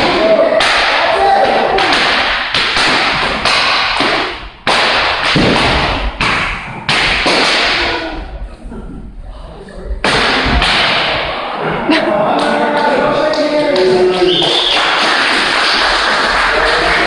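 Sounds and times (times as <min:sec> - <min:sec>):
voices: 0:07.8 - 0:14.6.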